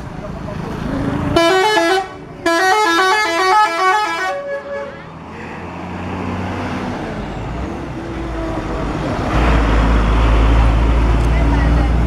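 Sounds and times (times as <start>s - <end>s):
bus engine rumbling: 0.0s - 12.0s.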